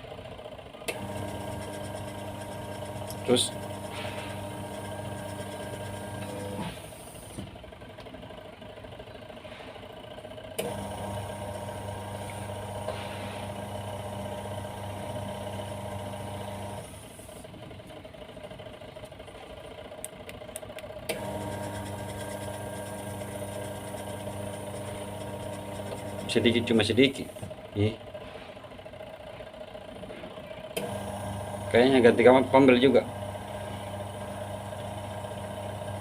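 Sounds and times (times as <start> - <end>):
washing machine motor humming: 0.9 - 7.5, 10.6 - 18.0, 21.0 - 28.0, 30.4 - 36.0
motor switch click: 30.8 - 31.2.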